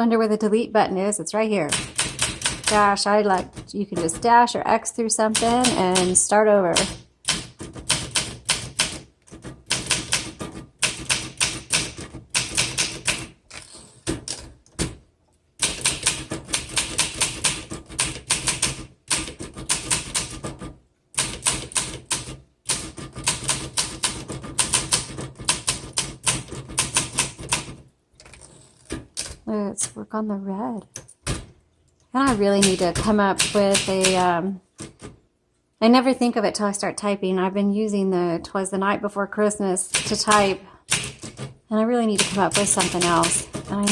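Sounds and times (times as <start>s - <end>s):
typewriter keys clacking: 42.2s - 43.9s.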